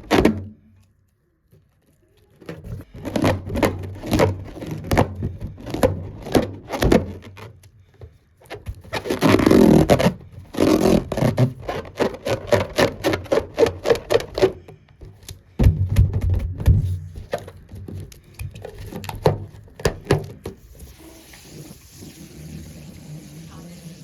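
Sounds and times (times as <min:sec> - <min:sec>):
balloon squeaking: 0:08.5 - 0:14.6, 0:19.8 - 0:24.0.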